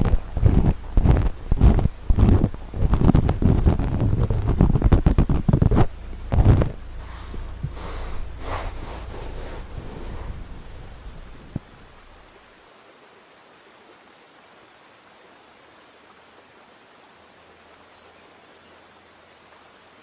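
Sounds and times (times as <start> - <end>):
scratching on microphone: 0.0 - 12.2
faint nature ambience hiss: 0.0 - 20.0.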